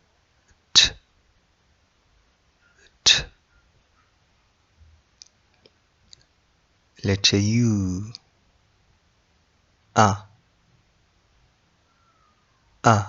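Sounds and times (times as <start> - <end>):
breathy t sound spoken: 0.8 - 1.0, 3.1 - 3.3, 7.0 - 8.2, 10.0 - 10.3.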